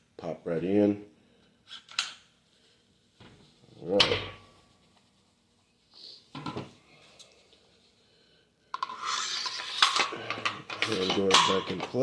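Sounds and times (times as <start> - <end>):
metal sliding on metal: 8.8 - 11.8.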